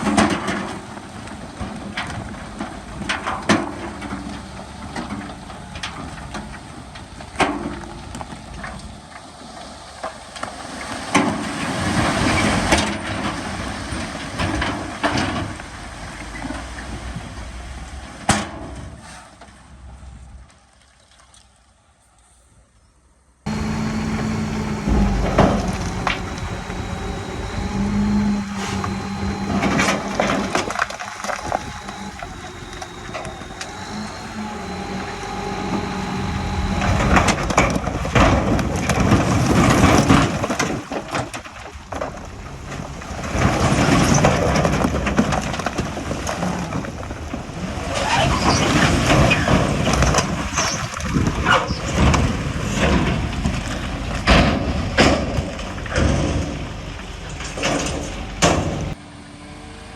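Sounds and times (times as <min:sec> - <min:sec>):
bulldozer diesel engine: 0:00.0 - 0:18.3, 0:23.5 - 0:59.9
soil and rock crunching: 0:23.5 - 0:59.0.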